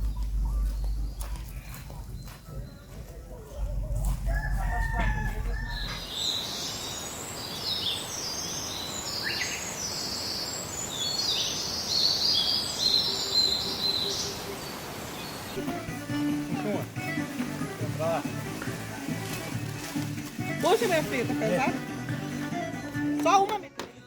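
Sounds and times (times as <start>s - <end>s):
small birds chirping: 0.0s - 4.5s, 5.5s - 16.6s
low rumble: 0.0s - 6.1s
rooster crowing: 3.7s - 6.2s.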